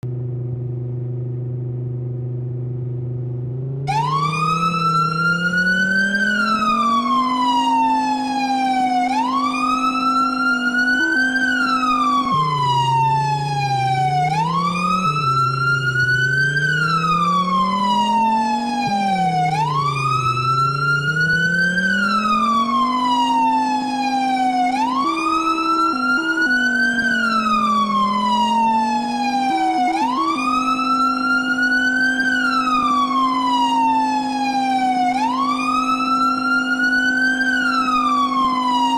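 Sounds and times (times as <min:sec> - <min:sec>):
low droning tone: 0:00.0 - 0:05.8
siren wailing: 0:03.9 - 0:38.9.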